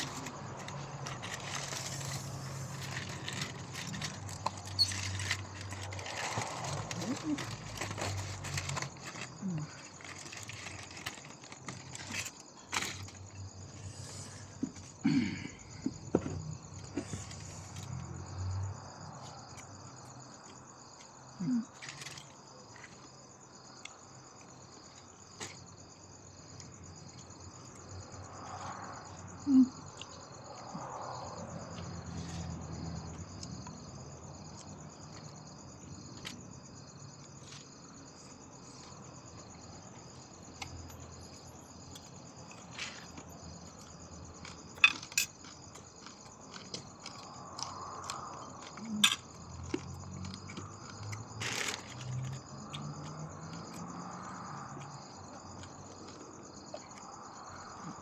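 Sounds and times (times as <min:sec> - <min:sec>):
crickets chirping: 0:00.0 - 0:58.0
small clicks and knocks: 0:44.3 - 0:53.8.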